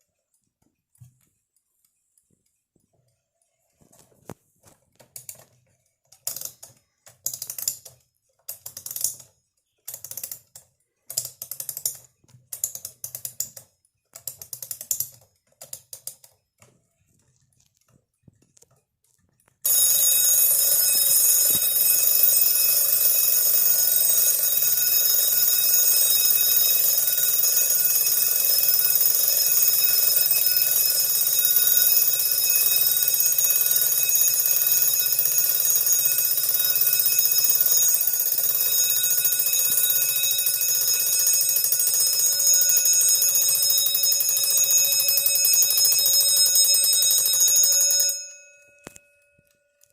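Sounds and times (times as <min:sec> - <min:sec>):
alarm clock mechanical clicking: 0:06.2 - 0:09.3, 0:09.9 - 0:13.6, 0:19.6 - 0:49.9
alarm bell ringing: 0:19.6 - 0:49.9.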